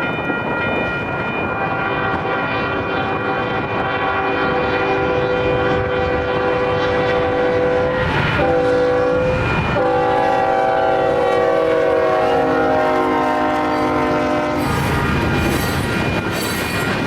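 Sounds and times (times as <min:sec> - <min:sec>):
train rumble: 0:00.0 - 0:17.0
locomotive air horn blasts: 0:01.5 - 0:15.1.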